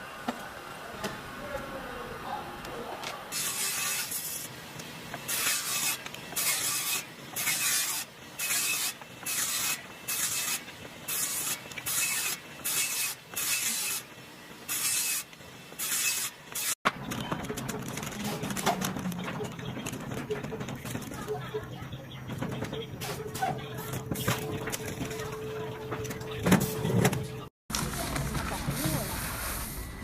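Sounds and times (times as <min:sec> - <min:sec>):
continuous crackling rustle: 0:27.7 - 0:29.5.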